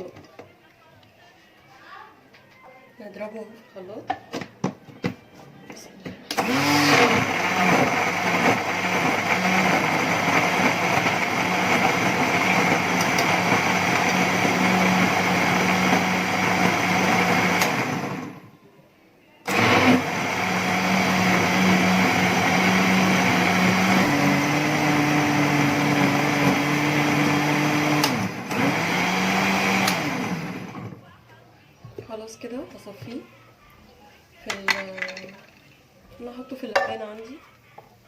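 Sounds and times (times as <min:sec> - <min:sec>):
electric blender running: 0:06.3 - 0:18.5, 0:19.5 - 0:31.0.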